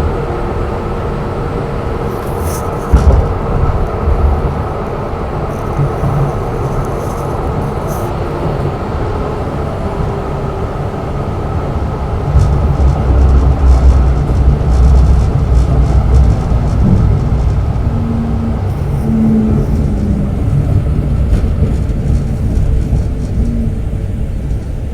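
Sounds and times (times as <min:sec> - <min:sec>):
tram wheels rumbling on rails: 0:00.0 - 0:24.9
short humming tones: 0:15.0 - 0:24.6.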